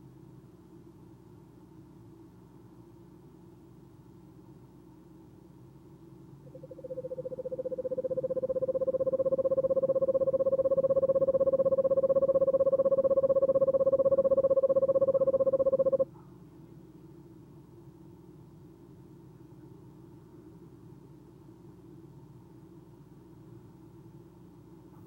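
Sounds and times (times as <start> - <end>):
owl monotone trill: 6.5 - 16.0.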